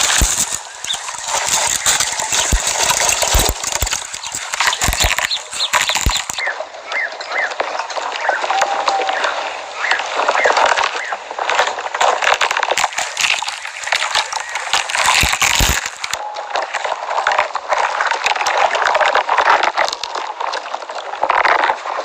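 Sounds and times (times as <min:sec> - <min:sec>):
camel chewing with wet crunching: 0:00.0 - 0:06.4, 0:12.0 - 0:16.2.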